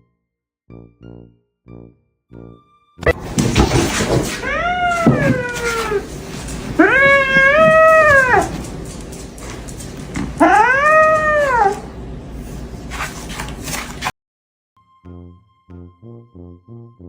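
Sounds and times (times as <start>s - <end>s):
cat meowing: 4.3s - 6.1s, 6.8s - 8.6s, 10.4s - 11.8s.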